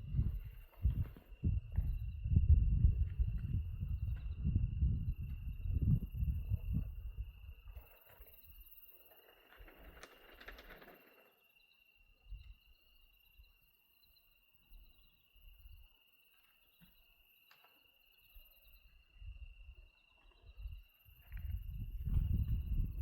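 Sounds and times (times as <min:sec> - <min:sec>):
soft crackle: 0:07.6 - 0:11.4.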